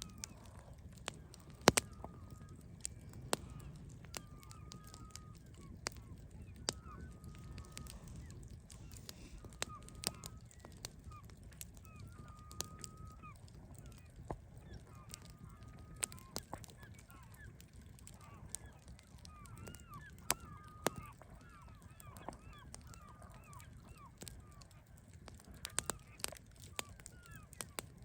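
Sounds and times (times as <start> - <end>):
bonfire crackling and popping: 0.0 - 28.0
birds honking: 1.2 - 10.8.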